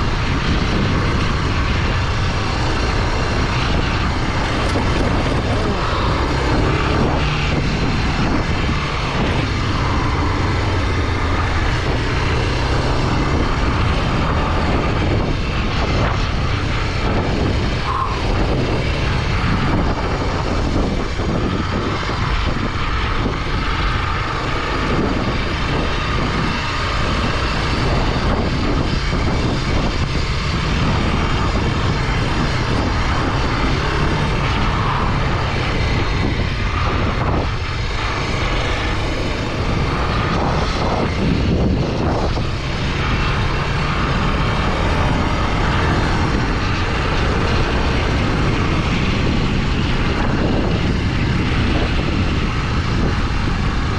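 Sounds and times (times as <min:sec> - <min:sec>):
motorcycle engine running: 0:00.0 - 0:53.9.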